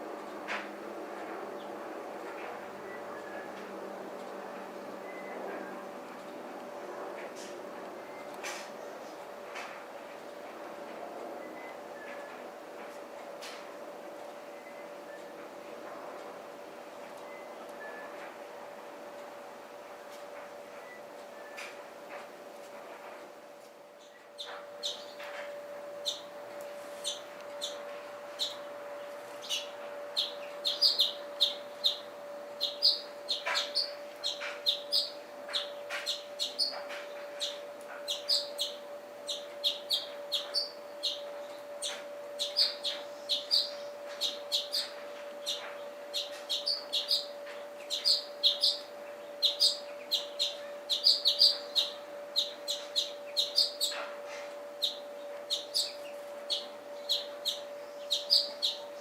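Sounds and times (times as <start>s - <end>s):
steady hum: 0.0s - 59.0s
songbirds chirping: 0.2s - 9.4s, 23.8s - 59.0s.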